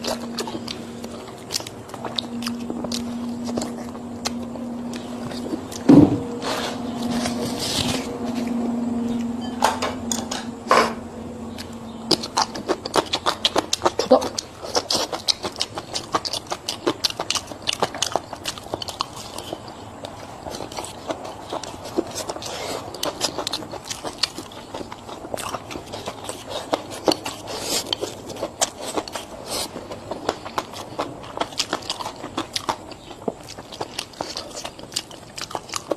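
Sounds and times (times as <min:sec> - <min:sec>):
crisp eating crunches: 0:00.0 - 0:09.3, 0:11.5 - 0:35.9
steady low hum: 0:00.0 - 0:35.9.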